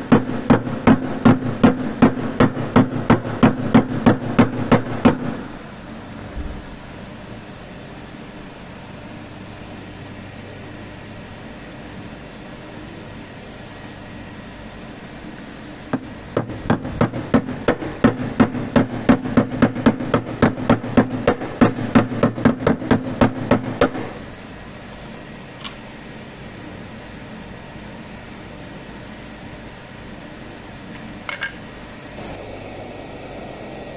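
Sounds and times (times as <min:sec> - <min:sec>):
hammer blows on sheet metal: 0:00.0 - 0:05.5, 0:15.9 - 0:24.2
steady background hum: 0:00.0 - 0:33.9.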